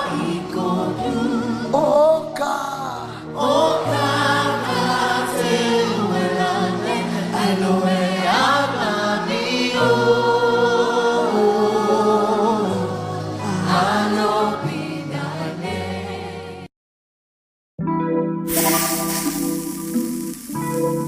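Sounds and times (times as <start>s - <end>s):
choir singing gospel: 0.0s - 2.2s, 2.9s - 16.7s.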